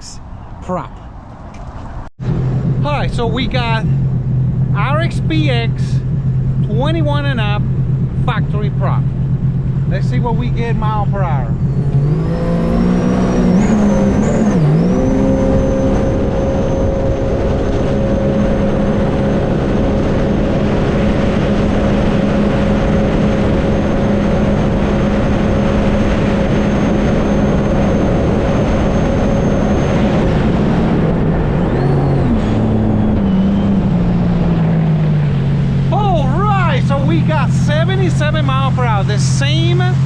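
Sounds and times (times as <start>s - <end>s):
jet ski engine at full throttle: 2.4s - 40.0s.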